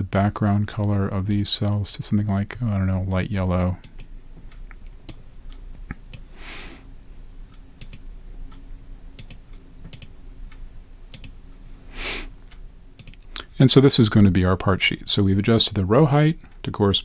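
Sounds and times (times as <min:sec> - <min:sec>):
soft breathy hiss: 0:00.0 - 0:17.0
computer mouse and keyboard clicks: 0:09.2 - 0:10.2, 0:11.1 - 0:11.4.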